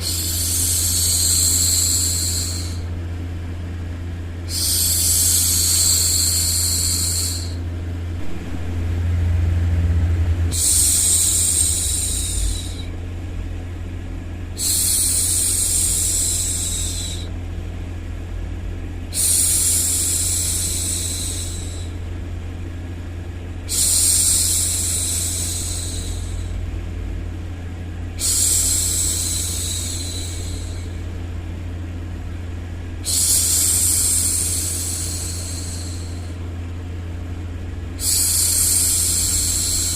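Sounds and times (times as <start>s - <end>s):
low white noise hum: 0.0s - 39.9s
woman shushing: 10.5s - 13.0s, 28.2s - 30.9s.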